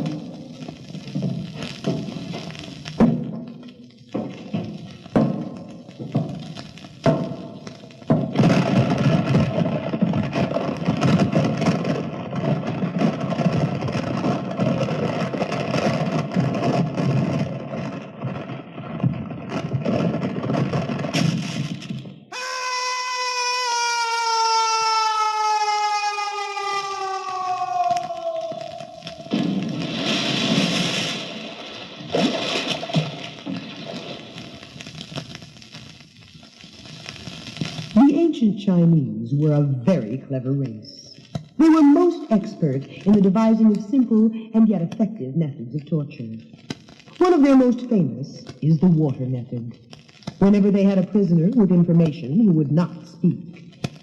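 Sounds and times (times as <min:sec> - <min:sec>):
crash and watery splash: 0:29.2 - 0:34.6.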